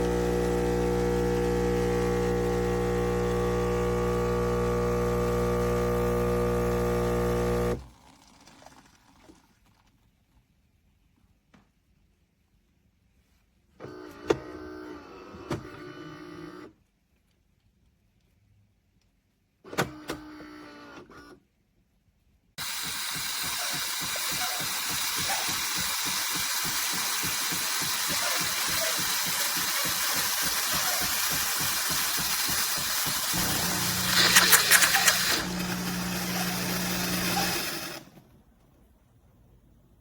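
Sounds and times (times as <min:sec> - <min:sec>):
pump humming with clicks: 0:00.0 - 0:09.4, 0:22.6 - 0:38.2
steam hissing while frothing milk: 0:22.6 - 0:38.0.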